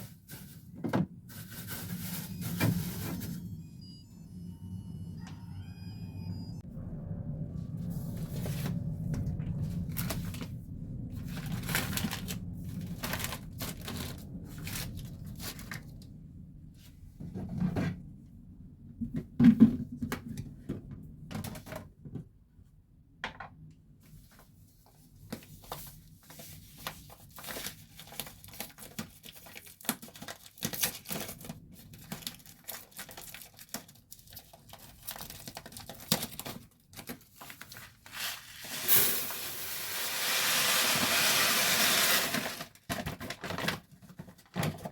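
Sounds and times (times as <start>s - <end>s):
low rumble: 2.3s - 17.2s
plastic packaging crinkling: 11.2s - 15.9s, 25.7s - 38.7s.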